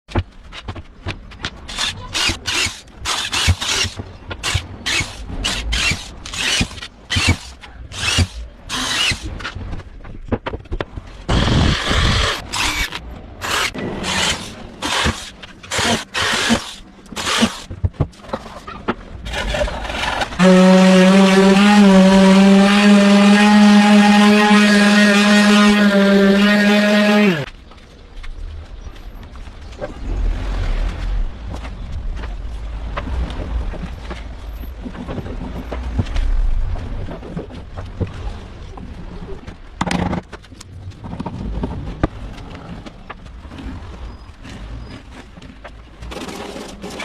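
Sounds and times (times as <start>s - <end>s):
hand tool rasping wood: 1.7s - 9.4s, 11.3s - 17.7s, 19.3s - 27.5s
power tool motor running: 11.3s - 17.6s, 20.4s - 27.5s.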